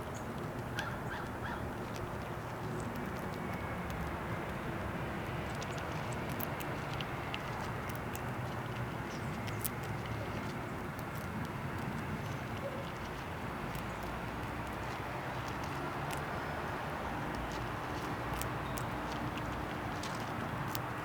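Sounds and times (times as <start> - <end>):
outdoor background hum: 0.0 - 21.0
small sharp clicks: 0.2 - 16.4.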